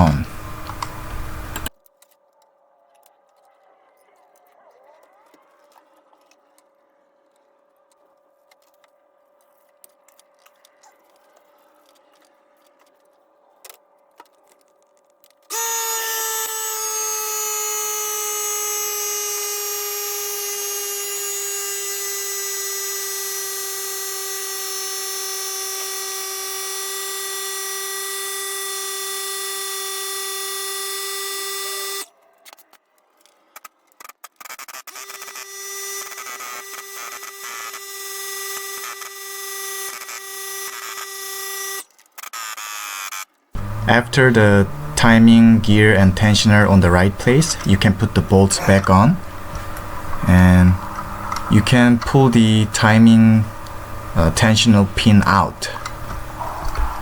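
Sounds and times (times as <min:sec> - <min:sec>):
power tool motor whining: 0:00.0 - 0:01.7, 0:15.5 - 0:32.1, 0:34.3 - 0:57.0.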